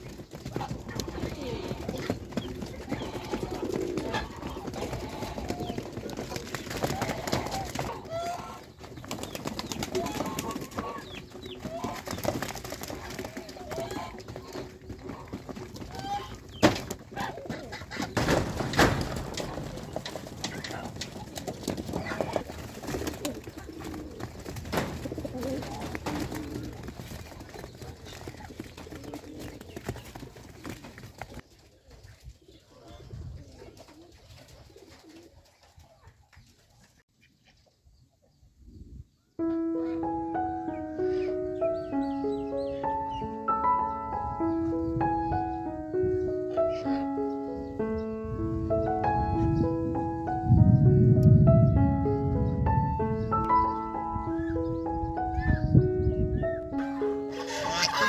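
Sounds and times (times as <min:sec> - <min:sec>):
geese honking: 0:02.8 - 0:05.8, 0:06.9 - 0:08.8, 0:09.9 - 0:12.2, 0:13.6 - 0:22.5, 0:56.7 - 0:58.0.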